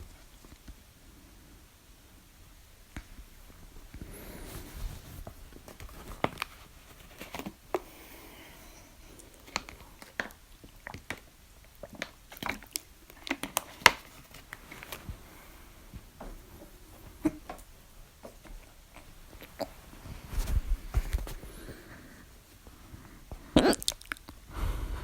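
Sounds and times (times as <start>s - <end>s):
person hiccuping: 23.6s - 24.0s.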